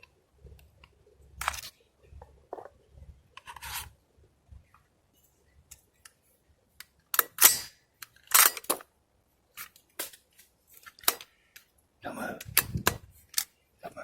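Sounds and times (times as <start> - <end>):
rifle action metallic clicks: 7.1 - 8.8, 10.8 - 11.7, 12.4 - 13.6.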